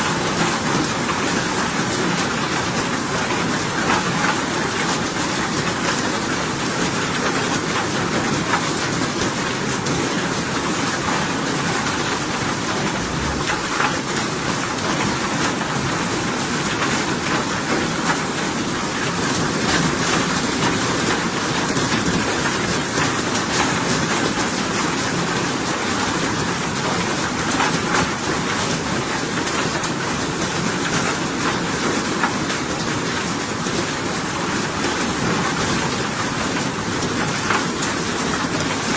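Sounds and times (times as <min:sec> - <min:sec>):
steady rain: 0:00.0 - 0:38.9.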